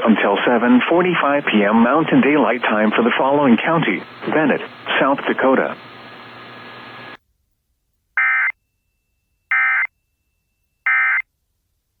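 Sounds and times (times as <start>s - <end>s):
radio static hiss: 0.0s - 7.2s.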